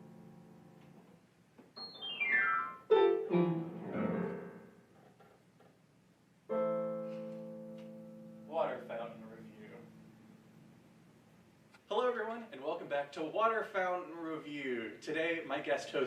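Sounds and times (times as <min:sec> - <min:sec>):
piano music: 0:00.0 - 0:00.9, 0:01.8 - 0:04.8, 0:06.5 - 0:10.3.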